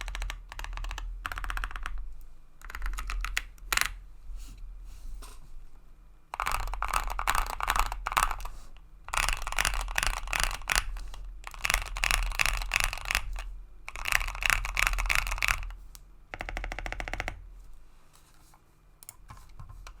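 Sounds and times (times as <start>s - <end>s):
mechanical keyboard typing: 0.0s - 4.0s, 6.4s - 8.5s, 9.1s - 17.4s.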